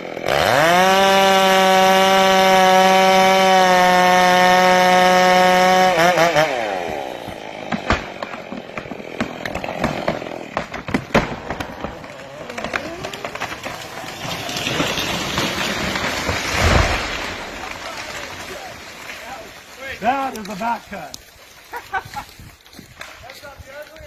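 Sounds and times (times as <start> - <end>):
chainsaw winding down: 0.0 - 10.6, 11.5 - 17.9
tree cracking and snapping: 0.0 - 24.0
heavy thud of tree falling: 9.6 - 18.8
rush of branches: 11.3 - 24.0.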